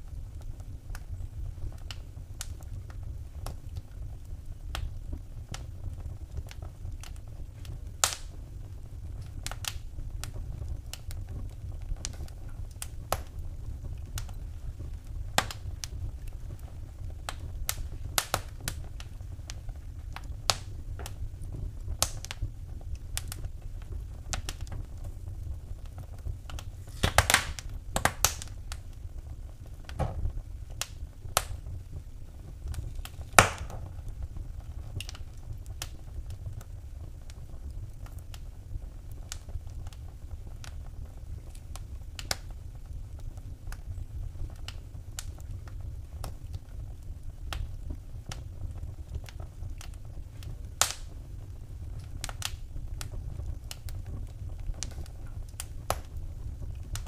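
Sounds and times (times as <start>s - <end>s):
low rumble of flames: 0.0s - 57.0s
wood fire crackling and popping: 0.0s - 57.0s.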